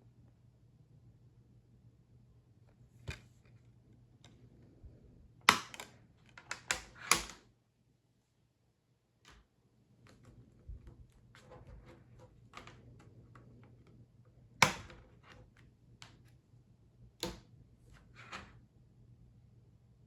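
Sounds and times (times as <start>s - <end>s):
plastic case clicks and taps: 5.5s - 5.9s.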